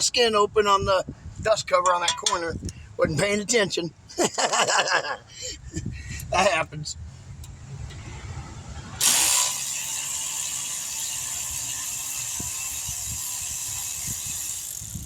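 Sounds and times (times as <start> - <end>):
power tool whining: 9.0 - 15.0.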